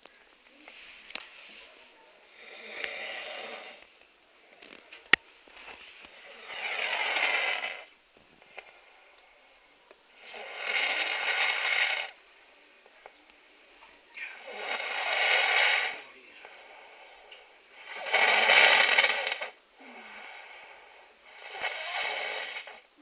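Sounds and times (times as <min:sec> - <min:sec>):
person snoring loudly: 0:02.3 - 0:03.8, 0:06.2 - 0:07.9, 0:10.2 - 0:12.2, 0:14.4 - 0:22.8.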